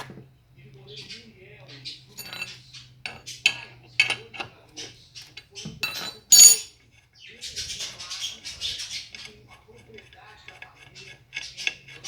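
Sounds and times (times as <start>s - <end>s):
wheel wrench and lug nuts clinking: 2.1s - 4.5s, 5.8s - 6.7s
metal scraping: 2.2s - 3.2s, 5.8s - 6.7s.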